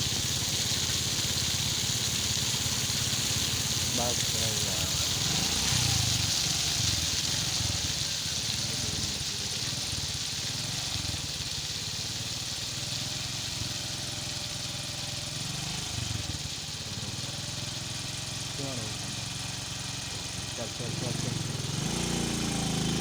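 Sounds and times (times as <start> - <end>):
heavy vehicle engine rumbling: 0.0 - 10.6
high hiss: 0.0 - 23.0.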